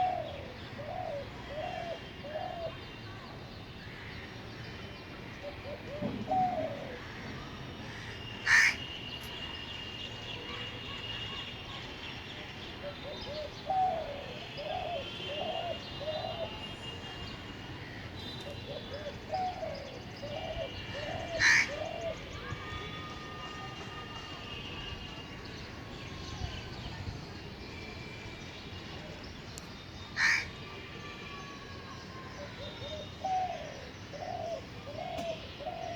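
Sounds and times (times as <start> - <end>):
dove cooing: 0.0 - 2.8, 5.4 - 7.1, 13.0 - 16.6, 18.6 - 22.2, 32.9 - 35.9
loud sharp bird calls: 7.8 - 9.1, 17.8 - 23.5, 30.2 - 30.6.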